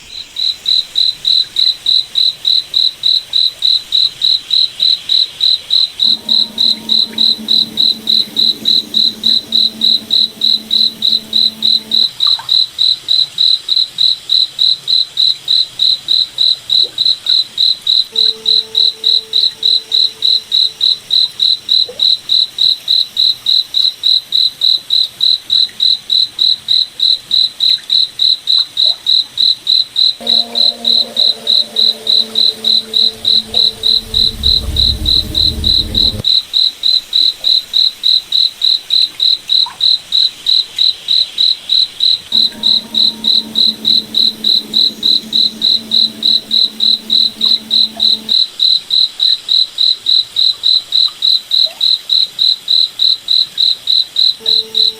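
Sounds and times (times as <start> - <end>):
low drone: 6.0 - 12.1, 30.2 - 36.3, 42.3 - 48.4
cricket chirping: 6.0 - 12.2, 30.2 - 36.2, 42.0 - 48.4.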